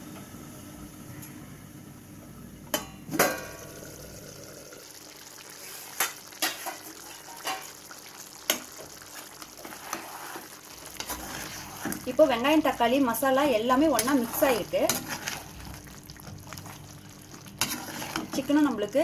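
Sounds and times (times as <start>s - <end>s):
food sizzling in pan: 3.4s - 19.0s.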